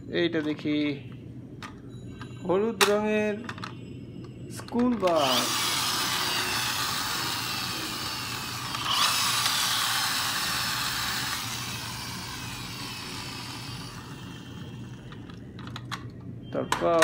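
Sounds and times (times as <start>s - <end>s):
toy bus motor whirring: 5.1s - 15.8s.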